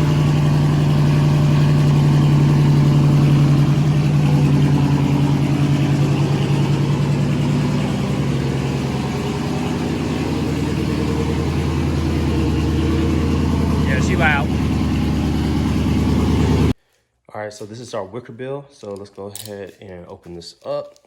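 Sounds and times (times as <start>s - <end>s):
car engine idling loudly: 0.0s - 16.8s.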